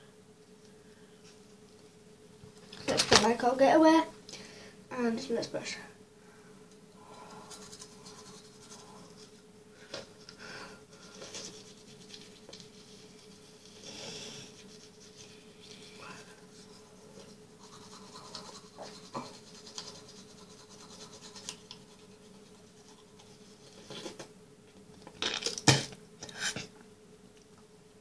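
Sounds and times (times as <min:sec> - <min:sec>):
electric toothbrush humming: 0:06.5 - 0:24.3
bristles scrubbing teeth: 0:07.3 - 0:09.3, 0:11.2 - 0:23.6.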